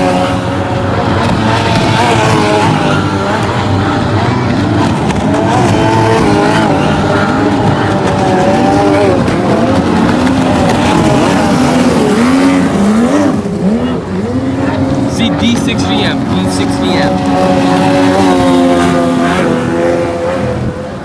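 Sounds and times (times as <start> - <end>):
racing boat engines whining: 0.0 - 21.0
steady rush of noise: 9.1 - 19.0.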